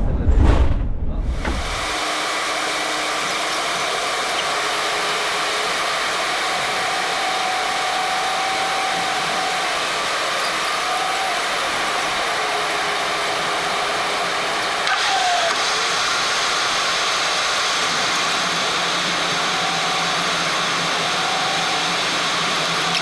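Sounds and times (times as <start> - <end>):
cockpit engine and airflow noise: 0.0 - 23.0.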